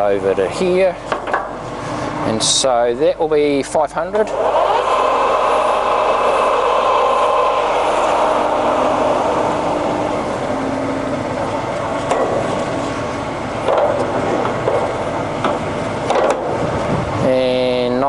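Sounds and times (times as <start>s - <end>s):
lathe running: 4.2s - 16.9s
sharp knocks: 13.6s - 16.6s.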